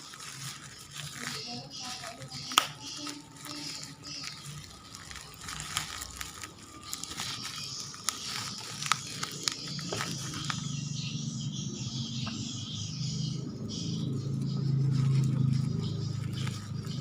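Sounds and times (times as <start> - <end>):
rustling of plastic and paper: 0.0 - 11.0, 14.8 - 17.0
low steady hum: 0.0 - 17.0.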